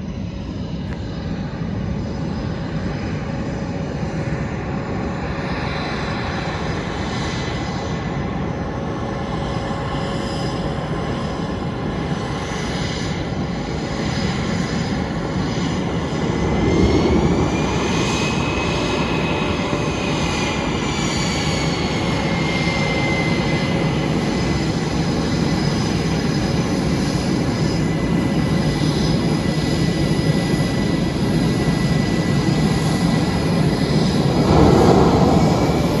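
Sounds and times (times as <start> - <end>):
jet engines running loud: 0.0 - 36.0
high engine whine: 14.6 - 21.1, 33.4 - 36.0.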